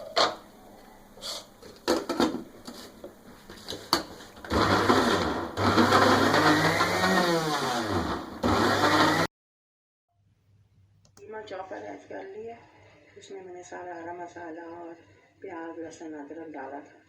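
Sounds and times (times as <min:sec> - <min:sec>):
electric food chopper grinding: 0:04.5 - 0:09.3.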